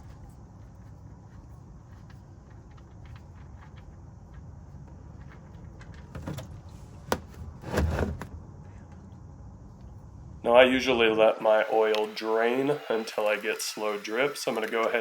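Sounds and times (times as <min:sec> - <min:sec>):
low background rumble: 0:00.0 - 0:11.2.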